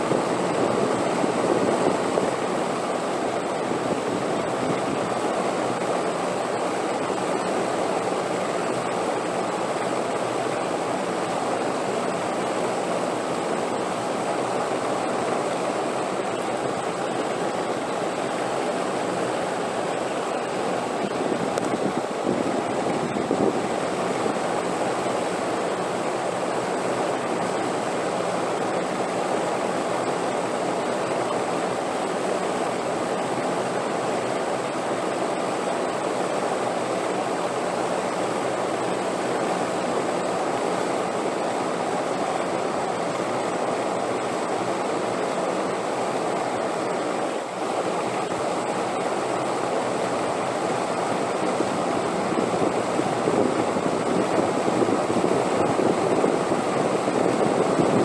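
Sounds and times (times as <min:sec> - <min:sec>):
steady rushing wind: 0:00.0 - 0:58.0.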